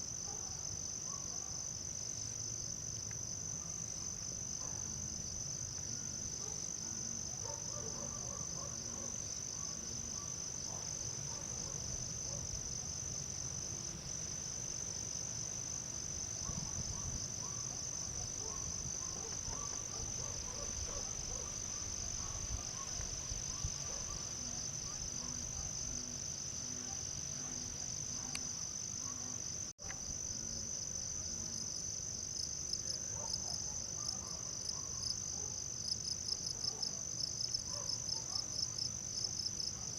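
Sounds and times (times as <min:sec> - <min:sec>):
insects trilling: 0:00.0 - 0:39.9.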